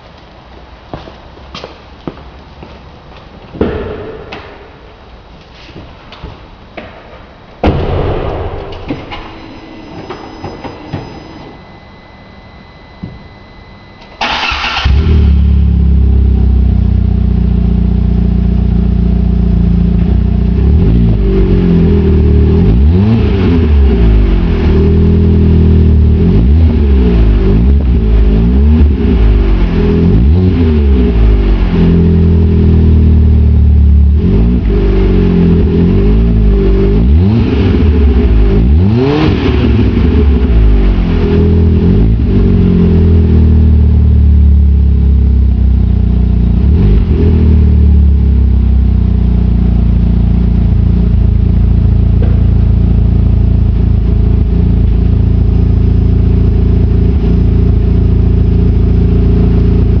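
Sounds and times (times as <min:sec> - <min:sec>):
car engine idling: 0:00.0 - 1:00.0
car engine revving: 0:14.2 - 1:00.0.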